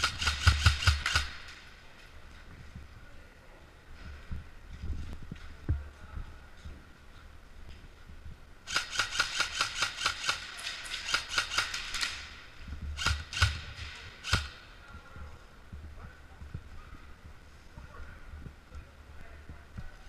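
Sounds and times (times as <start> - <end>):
airsoft rifle firing single shots: 0.0 - 1.5.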